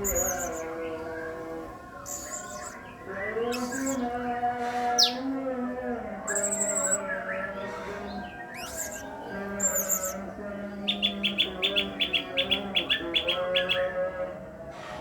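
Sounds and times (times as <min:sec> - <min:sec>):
parrot calling: 0:00.0 - 0:00.8, 0:01.4 - 0:04.0, 0:08.3 - 0:10.2.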